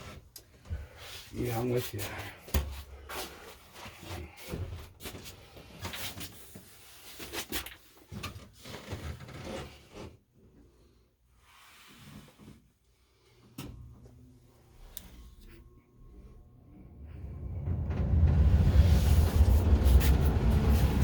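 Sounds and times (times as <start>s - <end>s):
handling noise rubbing and knocks: 17.2s - 21.0s.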